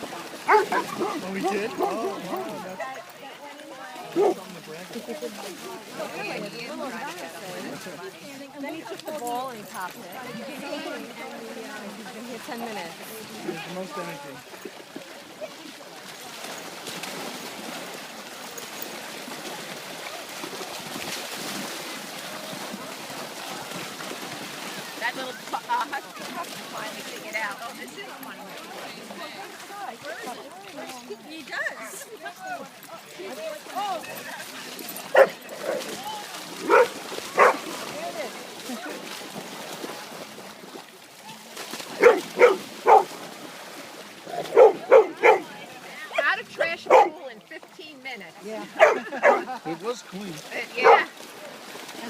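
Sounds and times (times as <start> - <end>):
background chatter and commotion: 0.0 - 52.0
water splashing and sloshing: 0.0 - 52.0
dog barking: 0.5 - 2.1, 4.2 - 4.4, 35.1 - 35.8, 36.6 - 37.6, 42.0 - 43.1, 44.4 - 45.5, 46.8 - 47.2, 48.8 - 49.5, 50.8 - 51.1.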